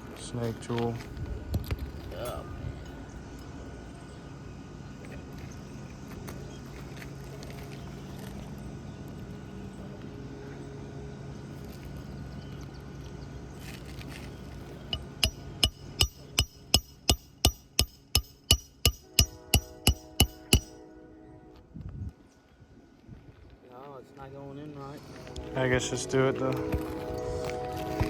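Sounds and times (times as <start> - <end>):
faint background hum: 0.0 - 28.0
hammer striking metal tool: 14.9 - 20.8.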